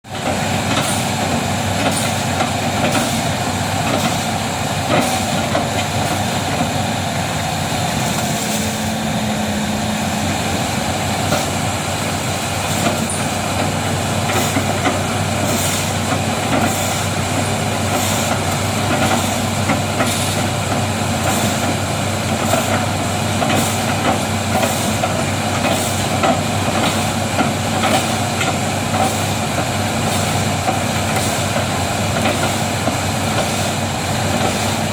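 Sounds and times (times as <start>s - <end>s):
excavator diesel engine: 0.0s - 34.9s.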